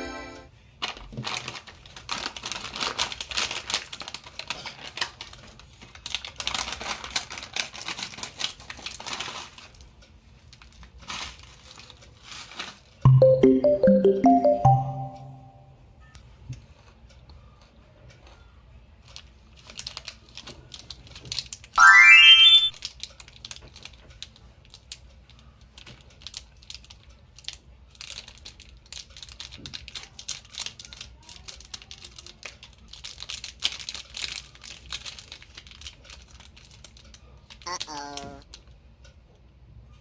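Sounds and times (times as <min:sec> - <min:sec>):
candy wrappers crinkling: 0:00.8 - 0:09.9, 0:10.5 - 0:13.0, 0:19.0 - 0:21.7, 0:25.6 - 0:37.9
short loud rising tone: 0:21.8 - 0:22.8.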